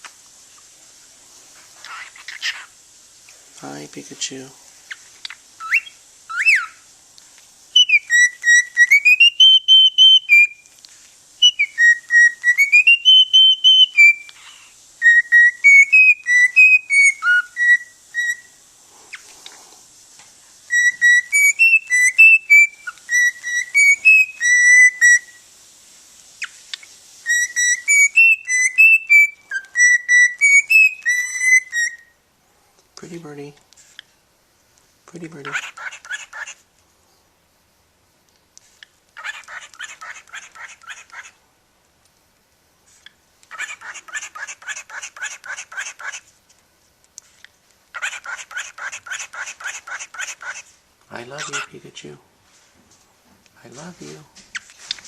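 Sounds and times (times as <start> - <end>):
cockatiel whistling a tune: 5.6 - 6.8, 7.8 - 10.6, 11.4 - 14.4, 15.0 - 18.6, 20.7 - 25.4, 27.2 - 32.2.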